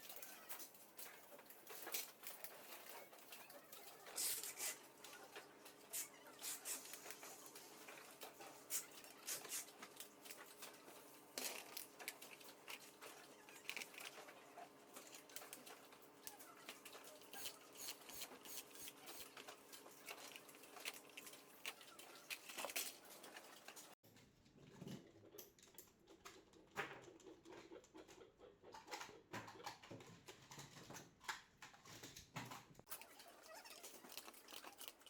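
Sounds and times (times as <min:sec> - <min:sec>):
small parts clicking and tapping: 0:28.8 - 0:35.0.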